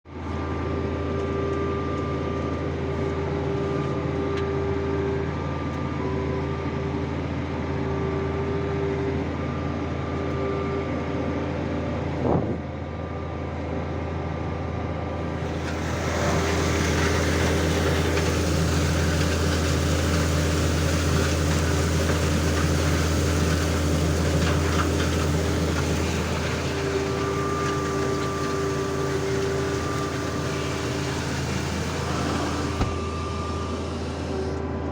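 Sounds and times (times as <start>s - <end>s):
tractor engine running: 15.1s - 34.8s
rushing crackling of grass: 15.2s - 33.0s.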